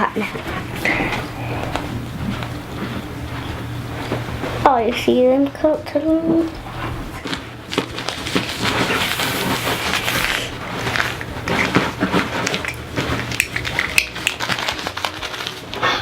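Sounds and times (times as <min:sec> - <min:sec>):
plastic toy eggs crackling and rustling: 0:07.2 - 0:16.0.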